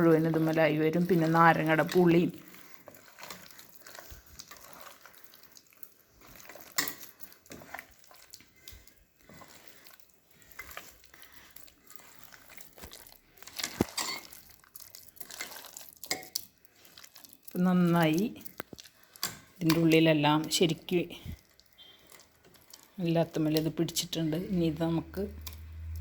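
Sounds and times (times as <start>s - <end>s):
hands squelching in marinade: 0.1s - 19.3s.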